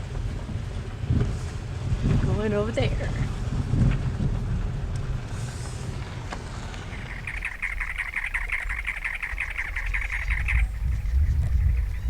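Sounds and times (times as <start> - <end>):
bird harsh chatter: 6.9 - 12.0
low rumble: 7.0 - 12.0.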